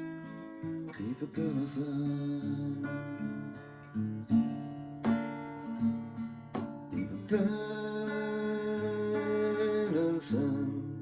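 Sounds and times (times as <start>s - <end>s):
acoustic guitar chords: 0.0s - 11.0s.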